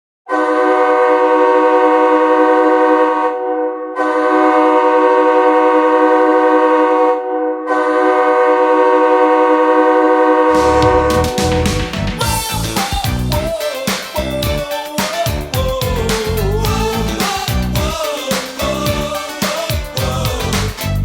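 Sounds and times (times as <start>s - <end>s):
goal horn blasts: 0.3s - 12.6s
music with heavy bass beat: 10.5s - 21.0s.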